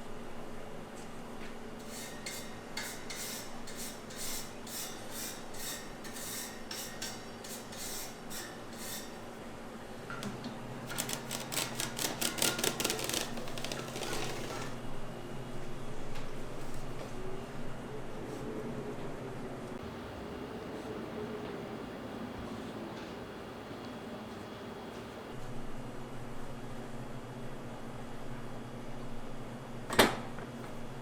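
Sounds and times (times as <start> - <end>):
kitchen utensil scraping: 1.8 - 9.2.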